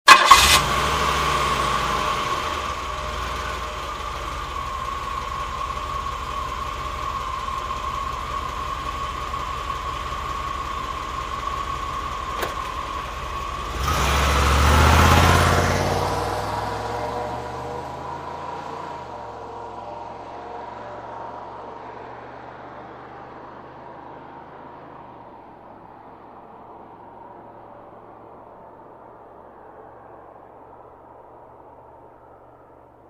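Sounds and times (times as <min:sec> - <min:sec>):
engine revving: 0:00.1 - 0:04.9, 0:12.4 - 0:21.1
car engine idling: 0:00.1 - 0:18.3.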